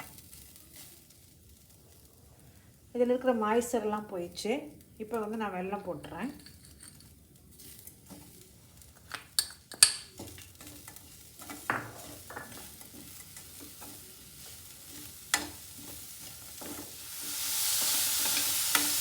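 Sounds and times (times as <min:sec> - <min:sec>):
sizzling in pan: 0:00.0 - 0:19.0.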